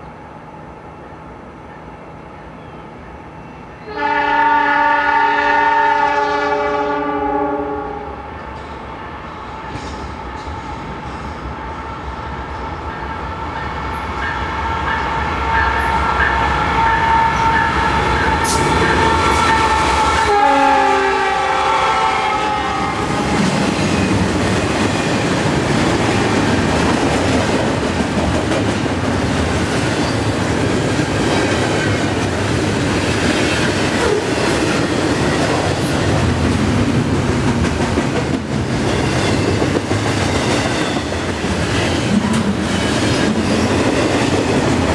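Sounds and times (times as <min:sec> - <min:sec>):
locomotive air horn chord: 0:03.8 - 0:08.3, 0:16.7 - 0:23.4
train cars rumbling and clattering: 0:08.2 - 0:44.9.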